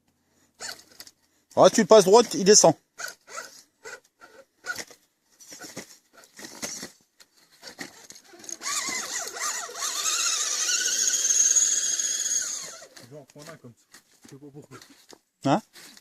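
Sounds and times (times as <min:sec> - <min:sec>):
electric motor and gearbox whining: 0:07.6 - 0:13.1.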